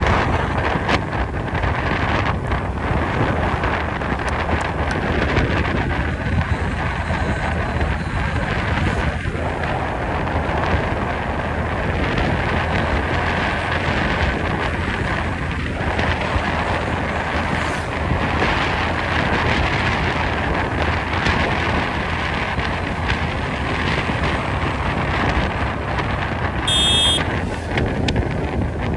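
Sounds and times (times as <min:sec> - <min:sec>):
wind buffeting microphone: 0:00.0 - 0:28.9
brief high-pitched tone: 0:26.7 - 0:27.3.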